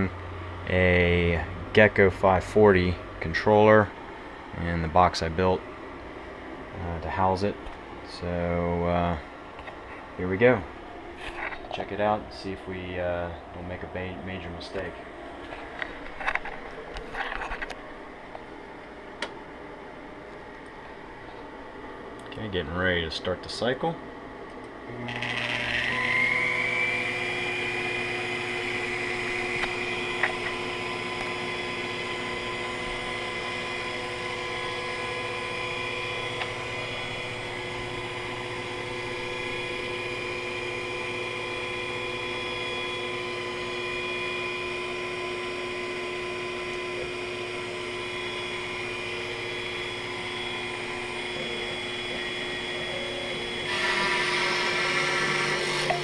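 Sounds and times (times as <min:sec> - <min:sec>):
mill spindle motor whining: 0:24.6 - 0:56.0.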